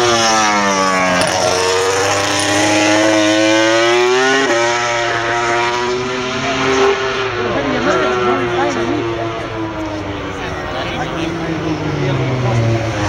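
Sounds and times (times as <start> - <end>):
motorcycle engine revving hard: 0.0 - 9.6.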